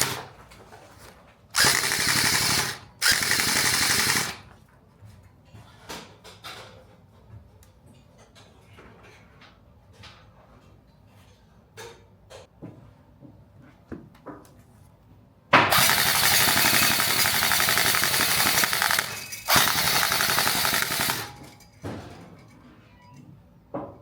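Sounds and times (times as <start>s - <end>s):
gel blaster firing bursts: 0.0s - 0.3s, 1.6s - 4.4s, 15.7s - 21.5s.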